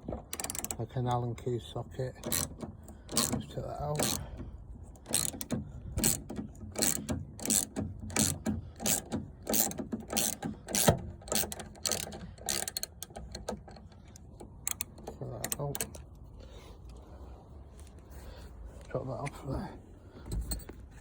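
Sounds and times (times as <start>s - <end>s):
ratchet pawl clicking: 0.3s - 0.8s, 2.2s - 4.3s, 5.0s - 14.0s, 14.6s - 16.0s.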